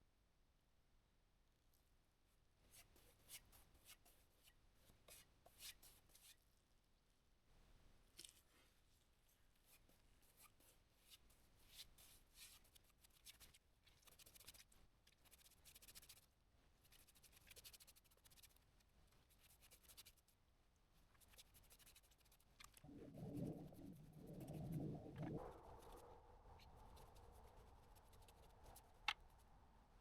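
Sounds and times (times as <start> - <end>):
scratchy rubbing on wood: 23.1 - 29.4.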